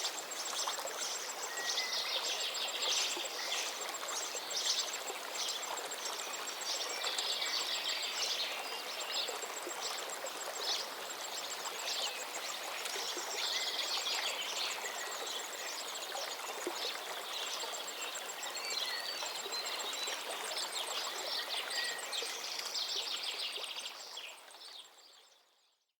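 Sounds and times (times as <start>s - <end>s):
stream flowing: 0.0s - 25.3s
songbirds singing: 10.6s - 25.9s.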